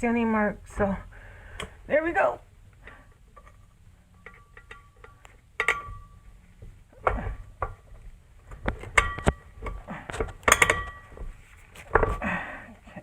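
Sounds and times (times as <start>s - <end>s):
metal tools clinking: 2.8s - 6.4s, 8.8s - 11.2s.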